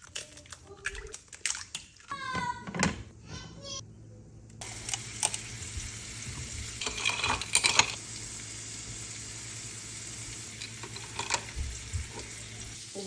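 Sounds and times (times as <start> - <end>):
food sizzling in a frying pan: 4.6 - 13.0
utensil clattering against pan: 6.8 - 8.0, 10.6 - 12.4.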